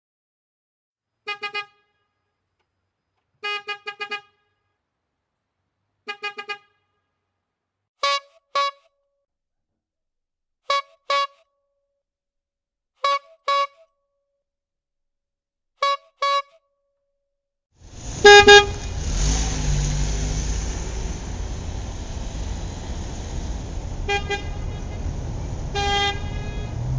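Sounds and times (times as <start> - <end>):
car horn tooting: 1.2 - 2.4, 3.4 - 4.7, 6.0 - 7.0, 8.0 - 8.9, 10.7 - 11.5, 13.0 - 13.9, 15.8 - 16.6, 18.0 - 19.4, 23.9 - 26.9
higher-pitched horn double beeps: 8.0 - 8.9, 10.7 - 11.4, 13.0 - 13.9.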